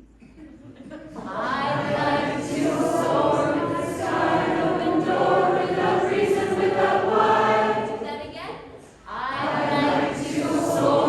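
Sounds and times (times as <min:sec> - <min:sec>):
choir singing in harmony: 0:01.2 - 0:08.1, 0:09.0 - 0:11.0.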